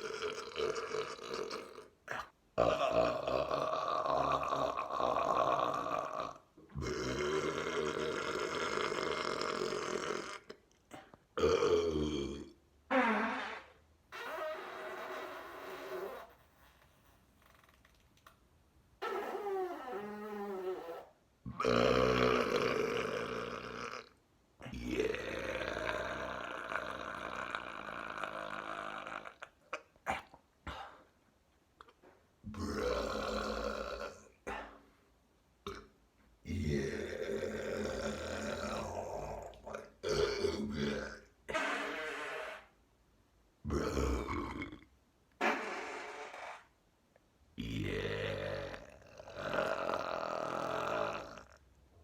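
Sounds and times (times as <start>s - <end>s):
person burping: 0.0s - 12.6s, 21.5s - 31.0s, 32.5s - 34.8s, 35.6s - 42.7s, 43.6s - 46.2s, 47.6s - 51.7s.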